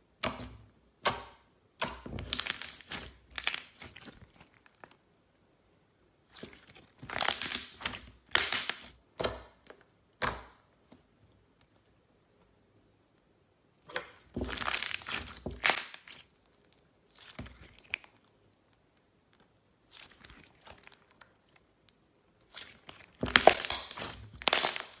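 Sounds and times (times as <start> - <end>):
slime crackling and popping: 1.8 - 5.0, 6.3 - 9.3, 14.0 - 18.2, 22.4 - 25.0.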